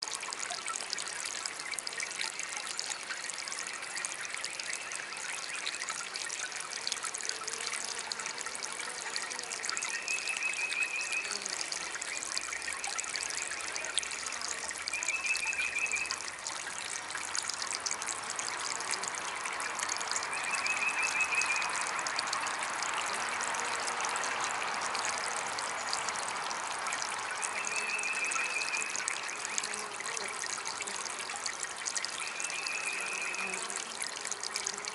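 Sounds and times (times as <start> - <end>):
water fountain trickling: 0.0 - 34.9.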